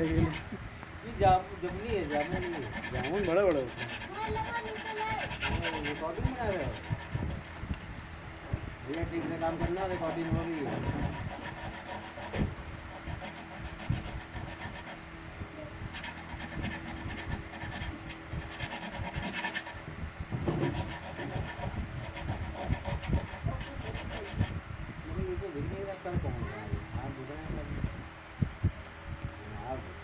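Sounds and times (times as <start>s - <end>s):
rubbing and scraping: 0.0s - 7.7s, 8.9s - 15.1s, 15.9s - 24.6s
rasping: 0.0s - 7.8s, 8.9s - 15.1s, 15.8s - 24.6s.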